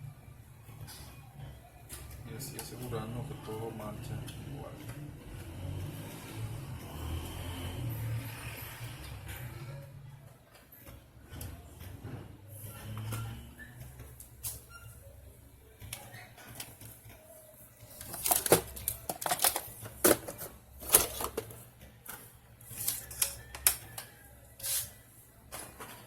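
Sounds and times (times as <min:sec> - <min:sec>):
small parts and tools clicking: 0:22.1 - 0:24.8.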